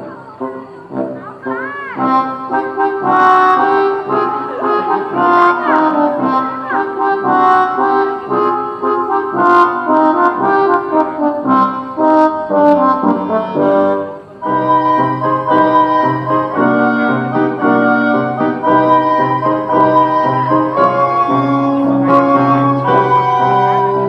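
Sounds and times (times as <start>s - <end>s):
brass music melody: 0.0s - 24.0s.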